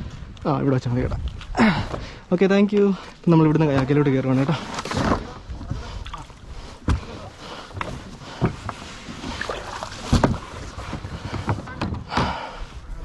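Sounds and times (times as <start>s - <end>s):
kayak hull knocks and thumps: 3.6s - 12.6s.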